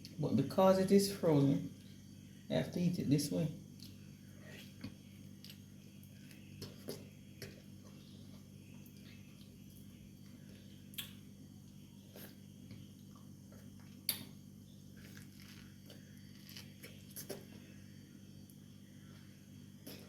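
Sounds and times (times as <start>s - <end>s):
steady low hum: 0.0s - 20.0s
knife and teeth crunching frozen fruit: 14.9s - 17.6s.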